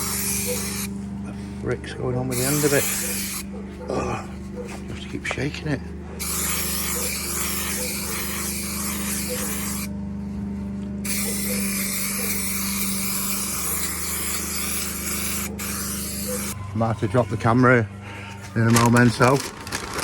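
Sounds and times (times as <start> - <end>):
aerosol can hissing: 0.0 - 0.9, 2.3 - 3.5, 6.2 - 9.9, 11.0 - 16.6.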